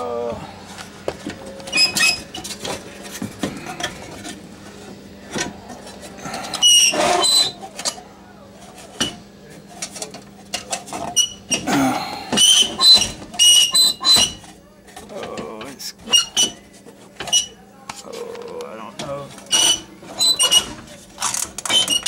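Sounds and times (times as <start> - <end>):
faint steady hum: 0.0 - 13.4.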